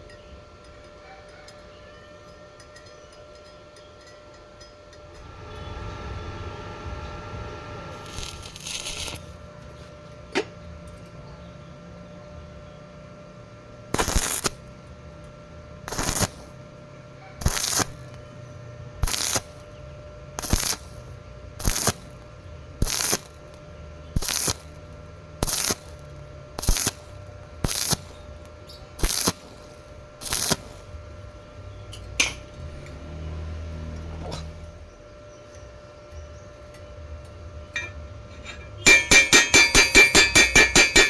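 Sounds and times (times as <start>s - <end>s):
welding arc crackling: 5.2s - 9.8s, 13.9s - 33.0s, 38.8s - 41.0s.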